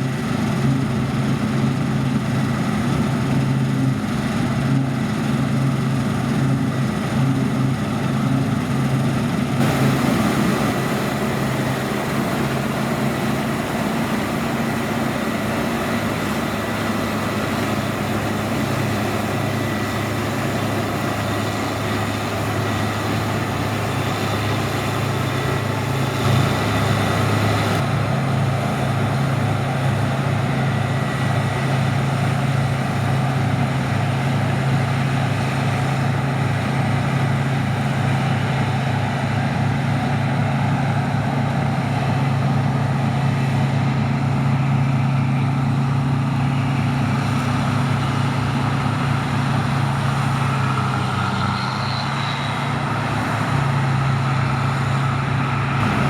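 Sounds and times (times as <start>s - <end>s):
diesel engine drone: 0.0s - 56.0s
hiss: 9.6s - 27.8s.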